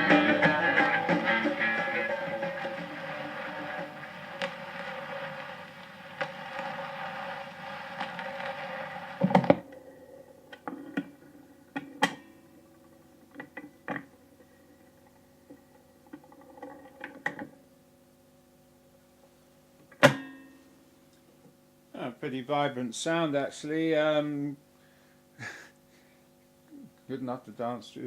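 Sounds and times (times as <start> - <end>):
record player playing music: 0.0 - 17.7, 18.7 - 20.6
steady hum: 0.0 - 28.0.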